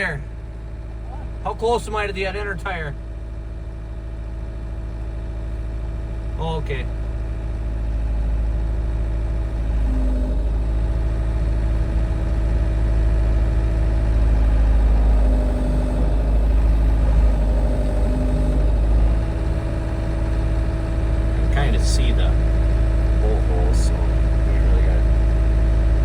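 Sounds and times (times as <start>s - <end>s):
tractor diesel engine running: 0.0s - 26.0s
short whines: 6.2s - 26.0s.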